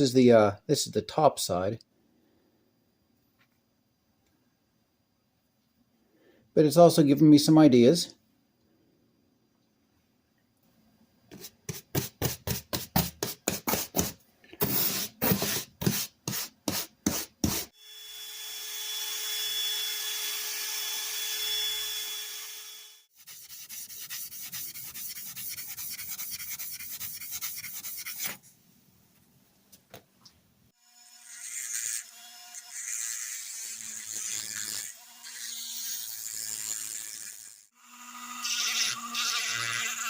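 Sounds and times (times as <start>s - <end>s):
metal file on steel: 23.2s - 28.4s
power tool whining: 31.6s - 40.0s.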